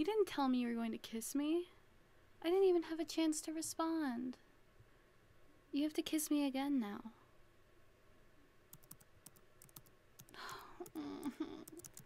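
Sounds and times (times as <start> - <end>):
keyboard typing: 8.7 - 12.0
soft breath: 10.3 - 11.4
person humming: 10.4 - 11.9.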